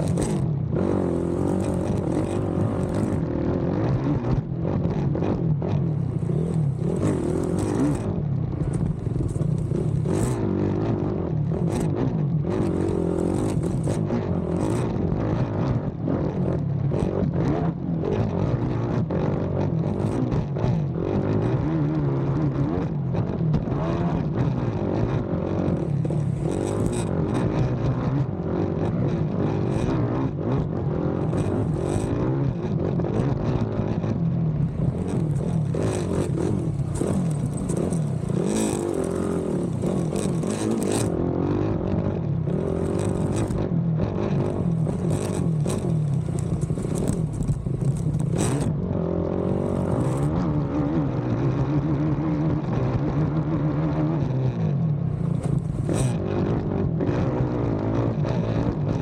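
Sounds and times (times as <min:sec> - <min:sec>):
quad bike engine revving: 0:00.0 - 0:15.6, 0:23.8 - 0:51.0, 0:55.1 - 0:59.0.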